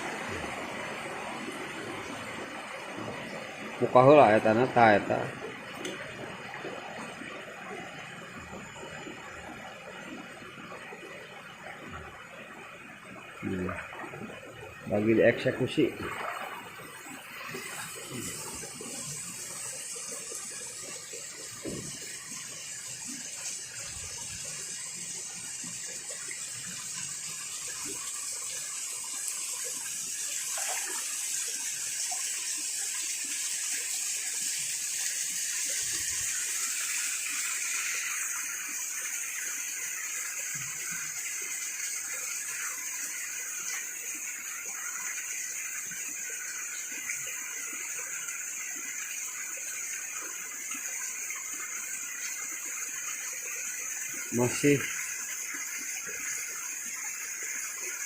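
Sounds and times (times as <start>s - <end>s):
flowing water rushing: 0.0s - 58.0s
faint knocks and splashes: 16.0s - 19.0s, 21.4s - 22.6s, 30.5s - 31.0s.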